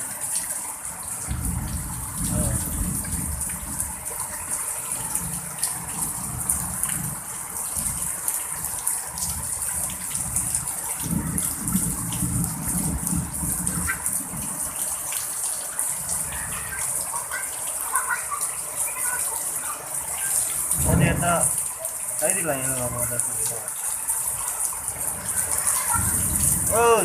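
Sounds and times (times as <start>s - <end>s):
heavy rain pouring: 0.0s - 27.0s
wind rumble on microphone: 1.3s - 4.2s, 5.0s - 14.6s, 20.7s - 21.3s, 25.0s - 27.0s
strong wind gusts: 1.3s - 8.1s, 9.2s - 14.6s, 20.7s - 21.5s, 24.8s - 27.0s.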